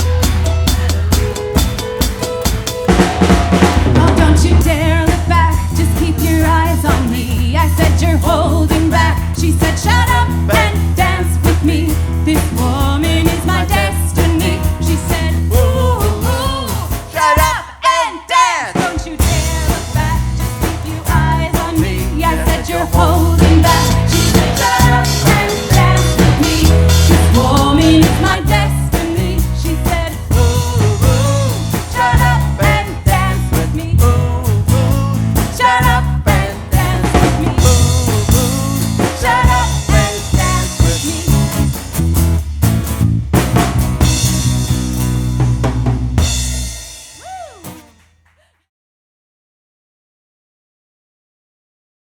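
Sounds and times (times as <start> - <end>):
bass guitar: 0.0 - 17.6, 19.2 - 48.2
drum kit: 0.0 - 17.8, 18.7 - 48.4
man singing: 22.0 - 41.8.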